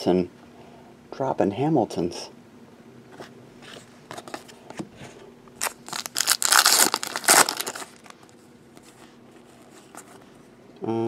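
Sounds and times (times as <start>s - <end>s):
wrapper crinkling and tearing: 5.6s - 8.3s.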